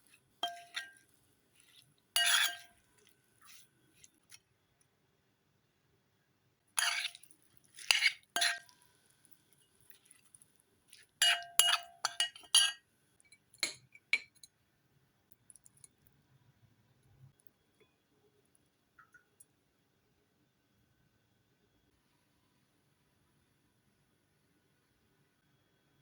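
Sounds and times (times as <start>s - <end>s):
utensils clinking against dishes: 0.4s - 1.0s, 2.2s - 2.7s, 11.2s - 12.8s.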